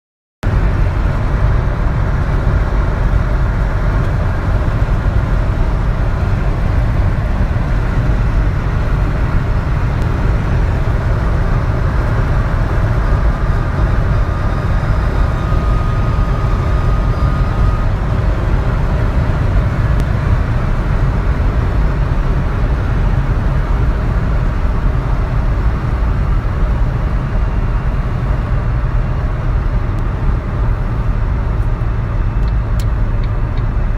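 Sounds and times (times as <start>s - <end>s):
car engine road and wind drone: 0.4s - 33.9s
thin steady whistle: 14.4s - 17.9s.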